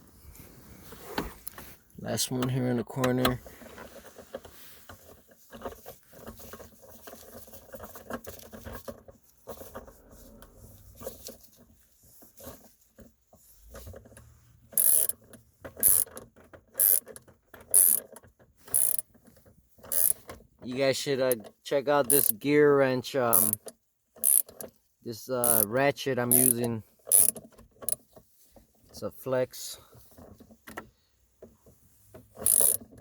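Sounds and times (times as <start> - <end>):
ratchet wrench clicking: 14.7 - 15.2, 15.8 - 16.2, 16.8 - 18.1, 18.7 - 19.1, 19.8 - 20.2, 22.0 - 22.4, 23.3 - 24.7, 25.4 - 25.7, 26.3 - 28.0, 32.4 - 33.0
handling clicks: 22.1 - 22.4, 23.3 - 24.7, 25.4 - 25.7, 26.3 - 28.0, 32.4 - 33.0.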